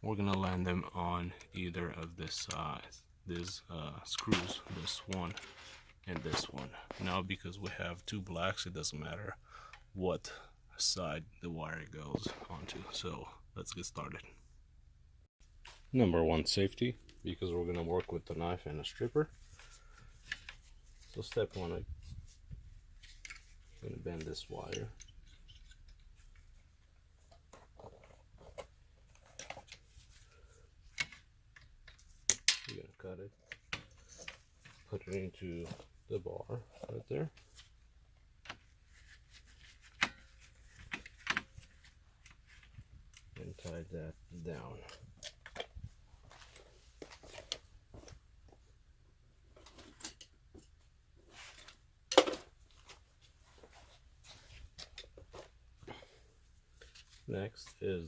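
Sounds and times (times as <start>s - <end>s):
wire bending clicks and scrapes: 3.3s - 8.2s, 12.0s - 13.2s, 17.0s - 35.6s.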